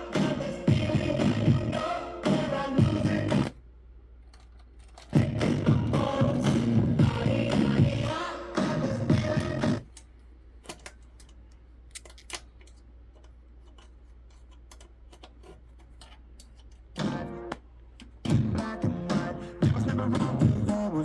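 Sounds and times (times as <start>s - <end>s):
music through amplifier: 0.0s - 3.5s, 5.2s - 9.8s, 17.0s - 17.6s, 18.3s - 21.0s
low steady hum: 0.0s - 21.0s.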